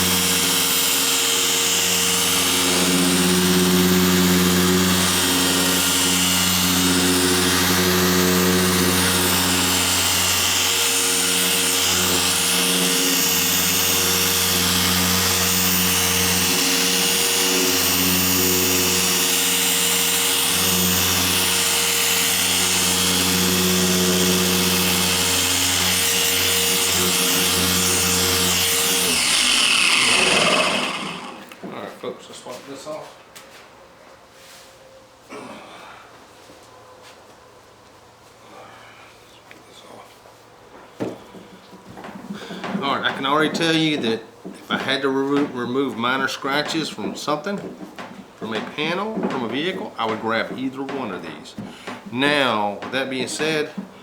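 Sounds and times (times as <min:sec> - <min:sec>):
electric car polisher running: 0:00.0 - 0:31.6.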